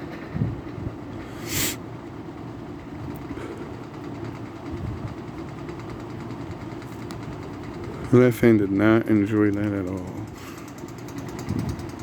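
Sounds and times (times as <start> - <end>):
box fan motor humming: 0.0 - 12.0
brief hiss: 1.4 - 1.8.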